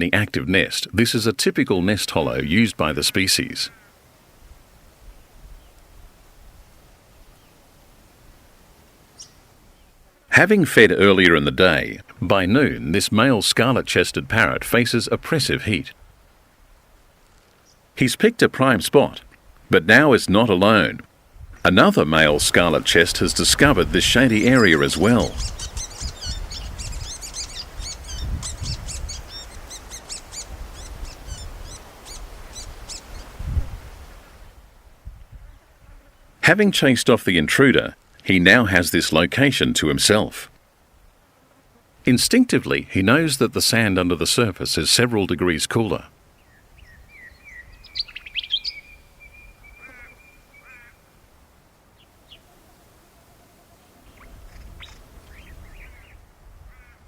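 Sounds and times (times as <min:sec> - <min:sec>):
small birds twittering: 0:05.1 - 0:06.1, 0:07.2 - 0:07.8, 0:09.0 - 0:10.0, 0:17.5 - 0:17.9, 0:22.3 - 0:34.6, 0:46.2 - 0:57.0.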